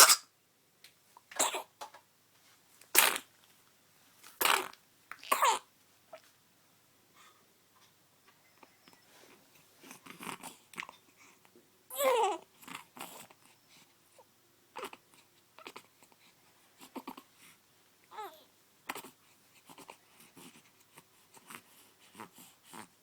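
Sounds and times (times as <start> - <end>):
baby making soft sounds: 11.9 - 13.4, 14.2 - 16.2, 16.8 - 17.3, 18.0 - 20.6.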